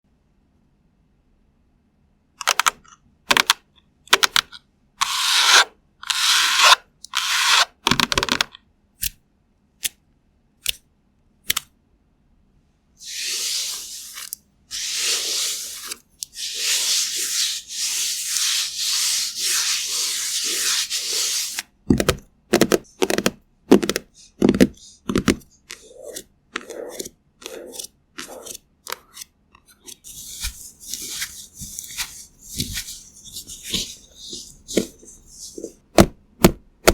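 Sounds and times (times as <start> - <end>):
light brushing: 13.0 - 21.6, 29.9 - 35.8
rubbing strokes: 13.0 - 21.7, 24.1 - 28.6, 29.9 - 35.8.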